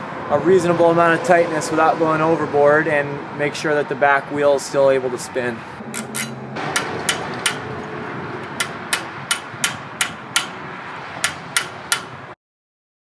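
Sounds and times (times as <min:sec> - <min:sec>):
hammer striking metal punch: 0:05.9 - 0:07.8, 0:08.4 - 0:10.6, 0:11.2 - 0:12.2.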